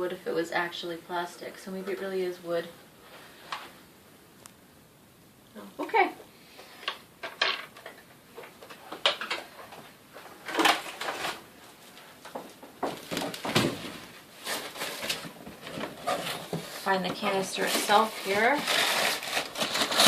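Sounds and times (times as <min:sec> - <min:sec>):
packaging rustling: 0:12.9 - 0:20.0.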